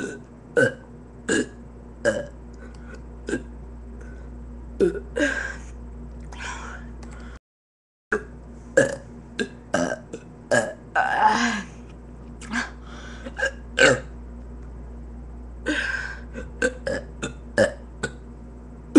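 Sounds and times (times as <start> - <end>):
person burping: 0.0 - 3.6, 4.8 - 5.6, 8.1 - 11.8, 12.4 - 14.2, 15.6 - 18.2
low electrical hum: 0.0 - 7.4, 8.1 - 18.9.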